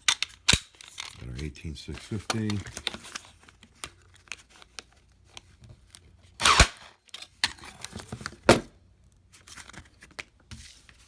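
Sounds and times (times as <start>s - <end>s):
handling clicks: 2.0s - 2.9s.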